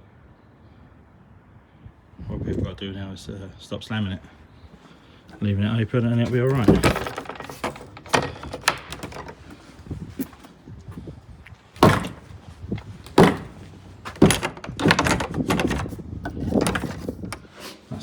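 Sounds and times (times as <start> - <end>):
door knocks and clunks: 6.1 - 10.6, 11.8 - 17.5
metal door hardware rattling: 6.1 - 10.6, 11.8 - 17.6.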